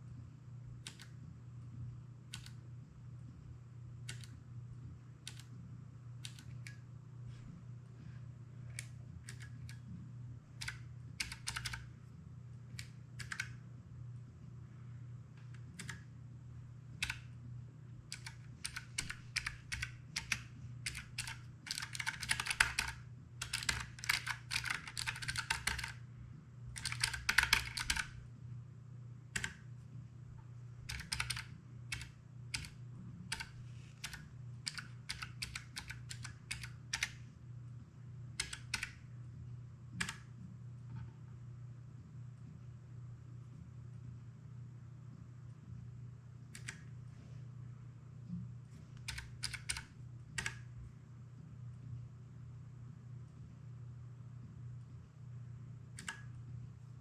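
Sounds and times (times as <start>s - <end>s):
steady low hum: 0.0s - 57.0s
mechanical keyboard typing: 0.9s - 1.2s, 2.3s - 2.6s, 4.1s - 4.3s, 5.3s - 5.5s, 6.2s - 6.8s, 8.8s - 9.8s, 10.6s - 11.9s, 12.8s - 13.6s, 15.7s - 16.1s, 17.0s - 17.3s, 18.1s - 26.0s, 26.7s - 28.2s, 29.4s - 29.6s, 30.9s - 37.2s, 38.4s - 39.0s, 46.6s - 46.8s, 49.0s - 50.7s, 56.0s - 56.3s.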